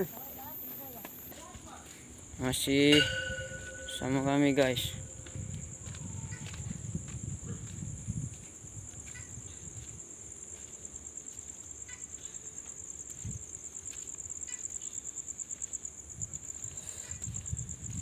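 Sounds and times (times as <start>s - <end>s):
crickets chirping: 0.0s - 18.0s.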